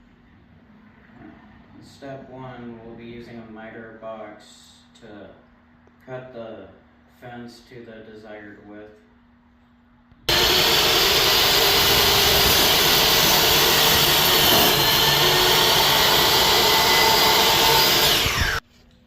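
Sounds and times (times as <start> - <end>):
miter saw cutting board: 10.3 - 18.6.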